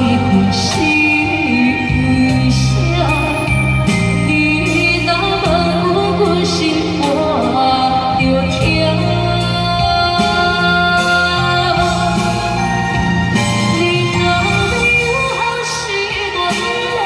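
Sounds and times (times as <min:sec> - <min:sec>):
instrumental pop ballad backing track: 0:00.0 - 0:17.0.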